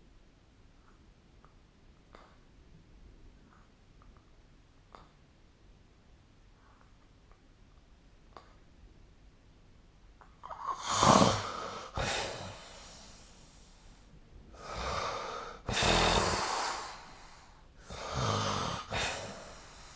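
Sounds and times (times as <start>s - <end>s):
person snoring: 10.4s - 13.4s, 14.6s - 19.9s.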